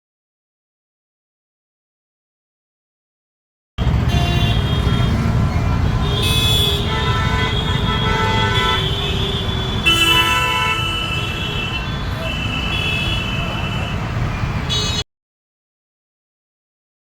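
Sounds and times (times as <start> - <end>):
rumble of engines: 3.8 - 15.0
vehicle horns honking: 3.8 - 15.0.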